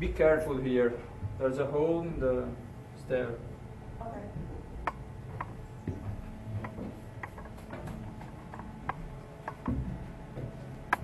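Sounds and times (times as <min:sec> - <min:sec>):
footsteps on stairs: 0:04.8 - 0:11.0.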